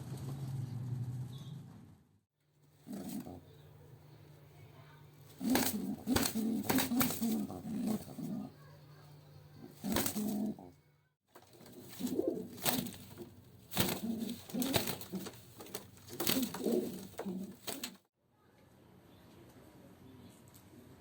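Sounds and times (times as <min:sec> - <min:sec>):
pigeons cooing: 0:02.8 - 0:03.8, 0:05.3 - 0:10.8, 0:11.5 - 0:18.0.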